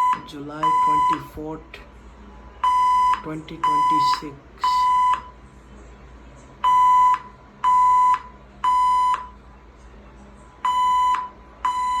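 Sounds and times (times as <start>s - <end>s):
fire alarm beeps: 0.0s - 1.4s, 2.6s - 5.4s, 6.6s - 9.4s, 10.6s - 12.0s.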